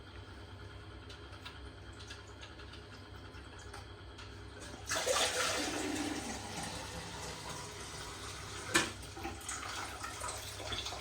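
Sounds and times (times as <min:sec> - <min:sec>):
water rushing from toilet tank: 0:04.6 - 0:11.0.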